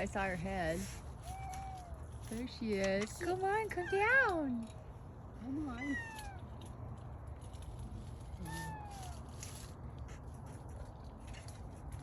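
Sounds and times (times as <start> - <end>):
cat meowing: 1.2 - 2.2, 5.6 - 6.5, 8.3 - 9.3.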